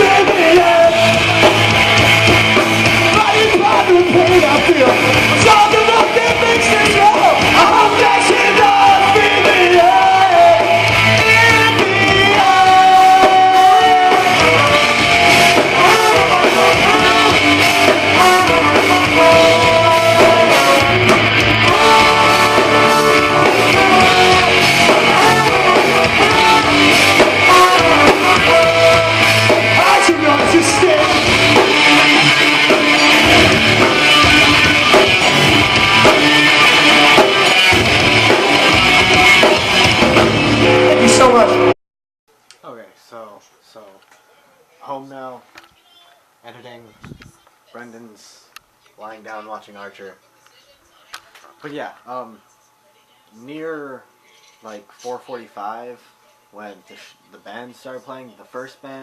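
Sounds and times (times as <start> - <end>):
person singing: 0.0 - 1.7, 3.1 - 39.4
electric guitars: 0.0 - 41.8
drums: 0.0 - 43.9.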